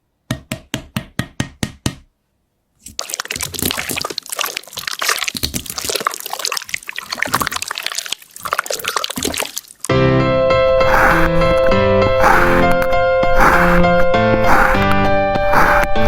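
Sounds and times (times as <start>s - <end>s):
slime crackling and squelching: 2.8s - 10.0s, 12.2s - 12.8s.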